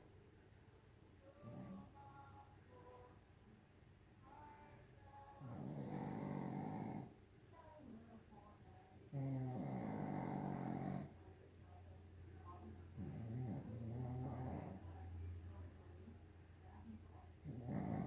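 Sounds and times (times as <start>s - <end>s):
dog snoring: 1.4s - 1.9s, 5.4s - 7.2s, 9.1s - 11.2s, 12.9s - 14.8s, 17.4s - 18.0s.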